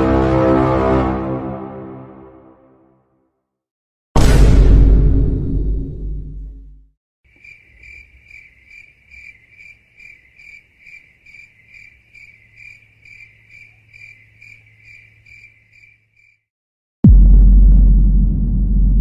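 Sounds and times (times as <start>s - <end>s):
cricket chirping: 7.3s - 16.5s.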